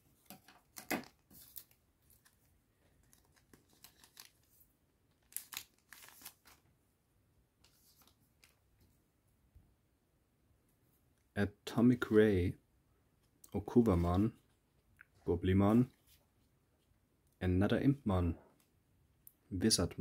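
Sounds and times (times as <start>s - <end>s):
wrapper rustling and tearing: 1.1s - 6.7s.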